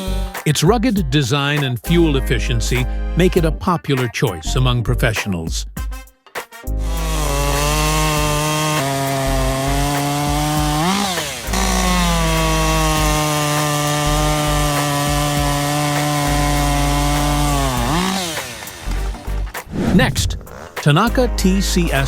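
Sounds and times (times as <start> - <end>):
chainsaw cutting wood: 0.0 - 0.4, 6.8 - 19.7, 20.4 - 21.0.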